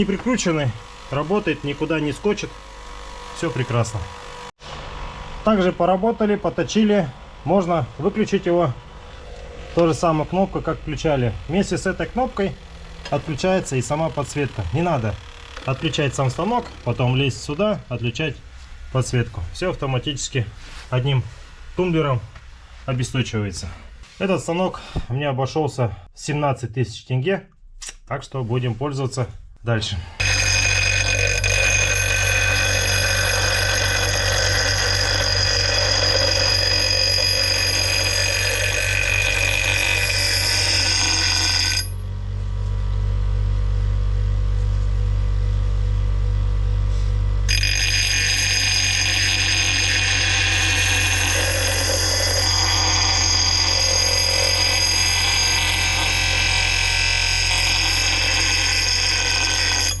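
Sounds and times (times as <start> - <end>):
steel screeching on grinding wheel: 0.0 - 4.5, 6.6 - 17.6, 30.2 - 42.1, 47.5 - 60.0
bench grinder motor hum: 0.0 - 18.9, 30.2 - 44.0, 46.4 - 60.0.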